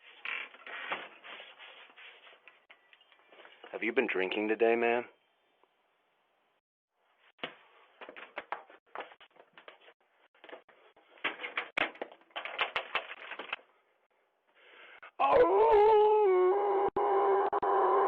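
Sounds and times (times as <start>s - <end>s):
taps knocks and clatters: 7.4s - 13.6s.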